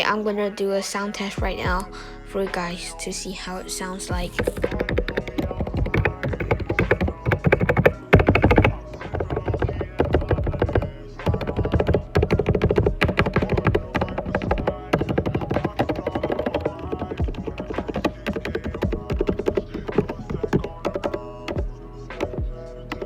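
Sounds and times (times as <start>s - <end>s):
background music: 0.0s - 23.0s
mechanical keyboard typing: 4.4s - 21.2s.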